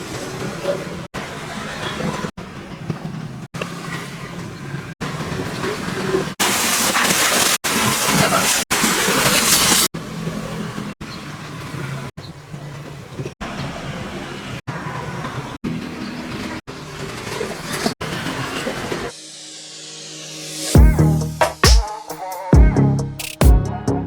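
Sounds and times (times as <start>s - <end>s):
pressure washer spraying: 6.4s - 9.9s.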